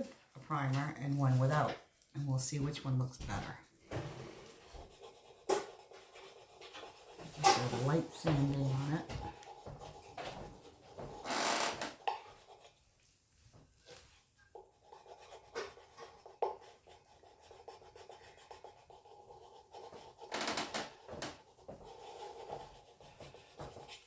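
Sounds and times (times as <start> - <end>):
faint scratching: 2.4 - 13.2.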